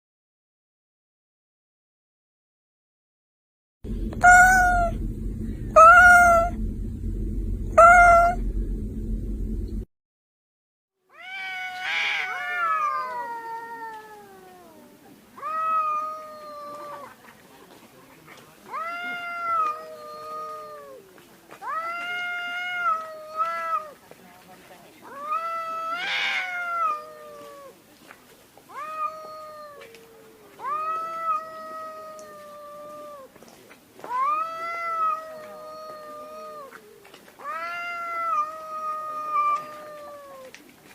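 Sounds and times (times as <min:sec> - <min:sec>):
low rumble: 0:03.8 - 0:09.9
cat meowing and yowling: 0:04.2 - 0:05.0, 0:05.8 - 0:06.6, 0:07.8 - 0:08.4, 0:11.1 - 0:17.1, 0:18.7 - 0:24.0, 0:25.1 - 0:27.8, 0:28.7 - 0:33.3, 0:34.0 - 0:40.6.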